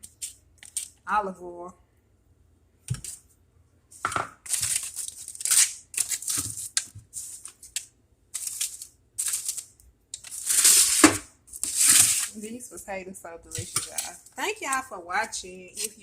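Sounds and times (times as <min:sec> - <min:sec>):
foil crinkling: 0:04.4 - 0:12.4.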